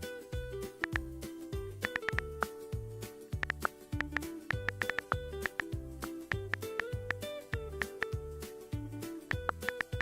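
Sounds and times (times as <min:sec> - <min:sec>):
background music: 0:00.0 - 0:10.0
sharp short ticks: 0:03.4 - 0:05.7.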